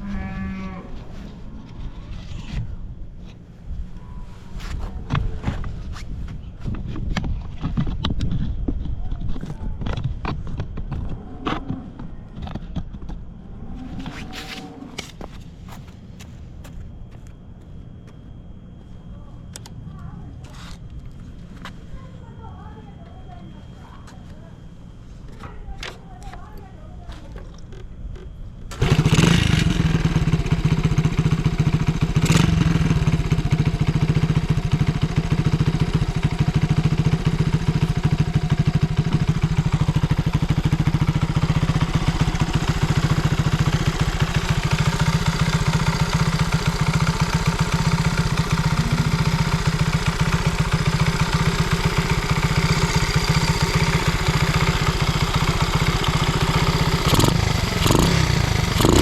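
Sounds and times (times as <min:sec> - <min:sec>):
motorcycle engine starting and idling: 0:13.9 - 0:16.4, 0:27.1 - 0:59.0.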